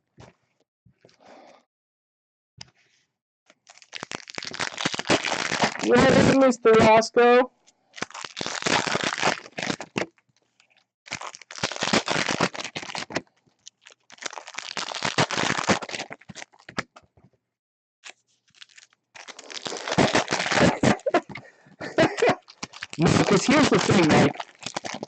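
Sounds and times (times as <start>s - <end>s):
foil wrappers torn and crinkled: 3.5s - 7.0s, 7.9s - 10.2s, 11.1s - 16.9s, 18.0s - 21.4s, 22.2s - 25.0s.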